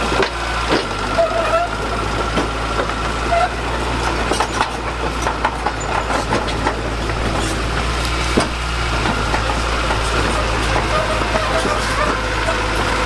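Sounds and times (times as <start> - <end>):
diesel engine running: 0.0 - 13.0
metal clanks and knocks: 0.0 - 13.0.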